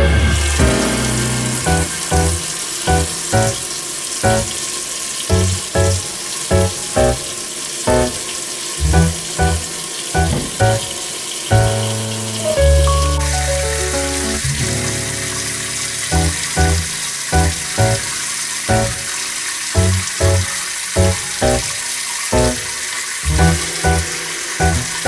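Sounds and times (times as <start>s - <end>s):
background music: 0.0s - 3.6s, 4.2s - 4.5s, 5.3s - 7.2s, 7.9s - 8.2s, 8.8s - 10.8s, 11.5s - 18.1s, 18.7s - 19.0s, 19.8s - 21.7s, 23.3s - 25.0s
tap water running into sink: 0.0s - 25.0s.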